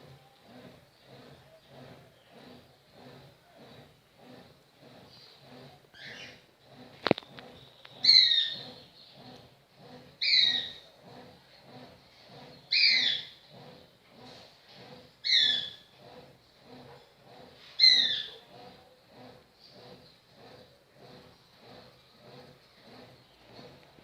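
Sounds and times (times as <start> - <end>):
bird calling: 12.7 - 13.4, 15.2 - 15.8.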